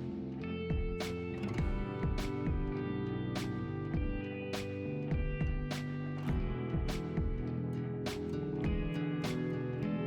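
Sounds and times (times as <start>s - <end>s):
plucked guitar: 0.0s - 10.0s
sharp percussive beat: 0.7s - 2.8s, 3.4s - 7.5s.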